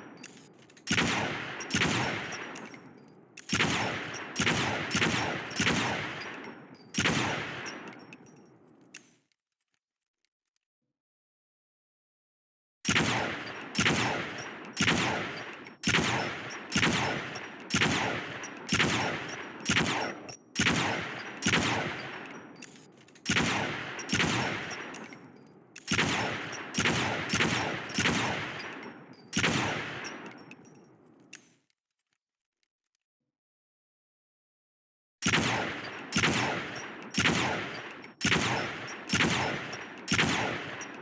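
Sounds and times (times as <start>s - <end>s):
rifle shots with echo: 0.0s - 8.3s, 12.9s - 31.1s, 35.2s - 41.0s.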